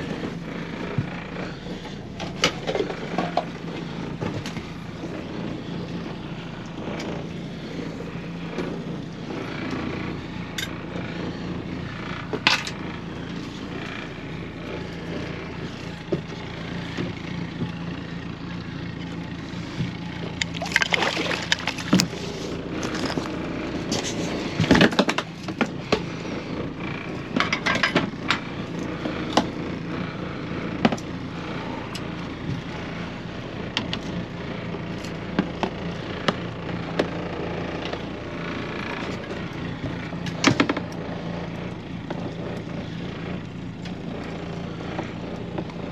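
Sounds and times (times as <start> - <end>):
motor humming: 0.0 - 45.9.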